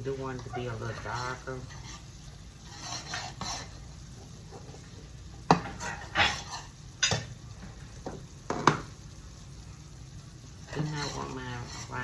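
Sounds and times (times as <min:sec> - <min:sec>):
utensil scraping a pan: 0:00.3 - 0:07.2, 0:10.6 - 0:12.0.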